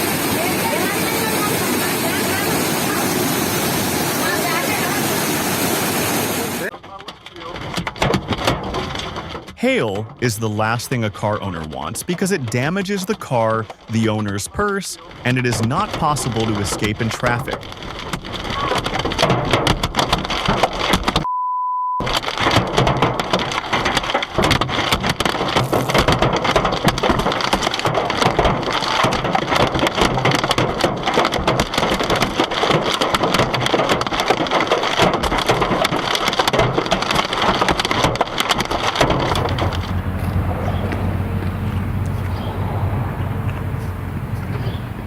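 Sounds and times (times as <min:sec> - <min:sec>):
hailstones pelting a car: 0:00.0 - 0:21.2, 0:22.0 - 0:45.0
censor bleep: 0:21.2 - 0:22.0.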